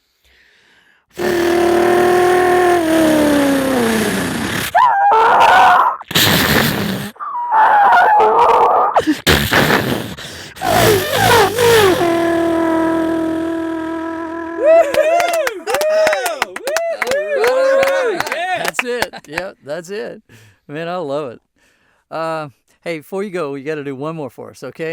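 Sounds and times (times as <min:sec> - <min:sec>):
man imitating car engine: 0:01.2 - 0:07.2, 0:08.3 - 0:16.6
vocal crash sounds: 0:01.2 - 0:07.3, 0:08.4 - 0:14.6
vocal tyre squeal noises: 0:01.2 - 0:15.0.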